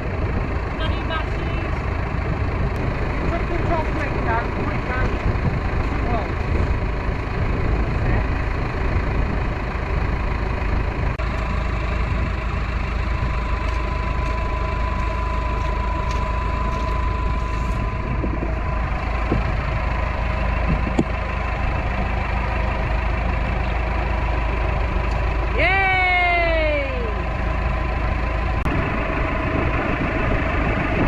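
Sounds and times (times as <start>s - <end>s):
tractor engine idling: 0.0s - 31.0s
thin steady whine: 11.2s - 20.0s.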